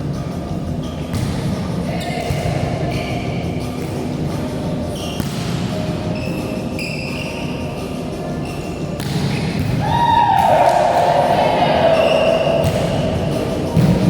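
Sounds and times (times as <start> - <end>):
volleyball smacks on gym floor: 9.0 - 9.8
echoing hall rumble: 9.7 - 14.0.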